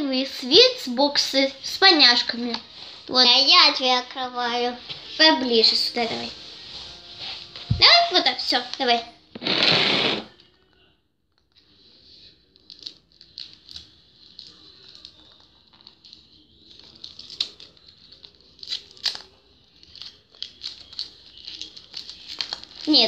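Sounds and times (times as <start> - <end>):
packaging torn and crinkled: 12.6 - 23.0.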